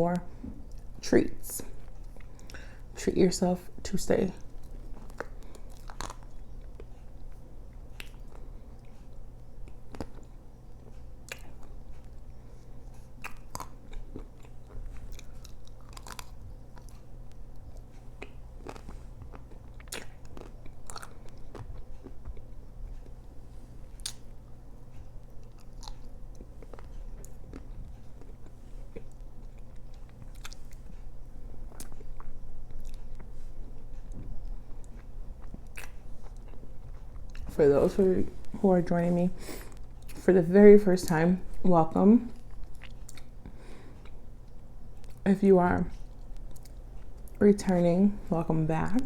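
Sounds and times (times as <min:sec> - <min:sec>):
biting and chewing ice cream: 0:04.4 - 0:37.6, 0:42.3 - 0:45.2, 0:45.9 - 0:47.4.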